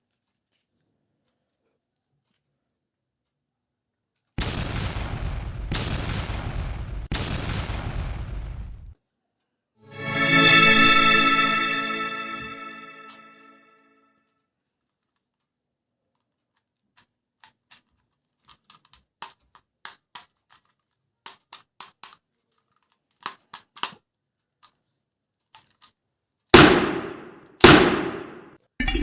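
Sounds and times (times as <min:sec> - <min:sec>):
loud shot-like bangs: 0:04.4 - 0:09.0, 0:26.6 - 0:28.5
plastic toy gun clicks: 0:16.2 - 0:24.0.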